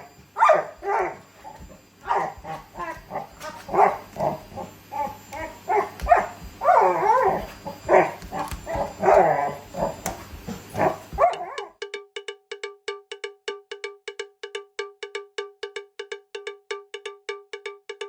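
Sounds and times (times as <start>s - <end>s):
dogs barking excitedly: 0.0s - 11.7s
steady low hum: 0.0s - 11.7s.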